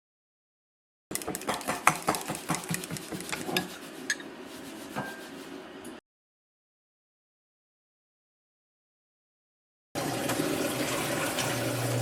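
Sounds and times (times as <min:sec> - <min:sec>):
kitchenware clink: 0:01.2 - 0:04.3.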